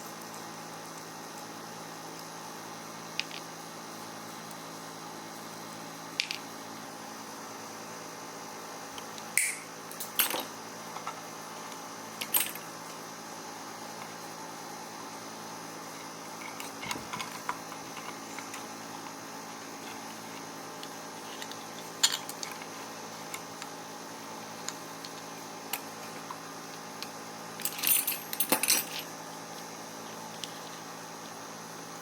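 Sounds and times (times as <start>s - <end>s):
steady low hum: 0.0s - 32.0s
small metal parts clinking: 27.6s - 29.1s.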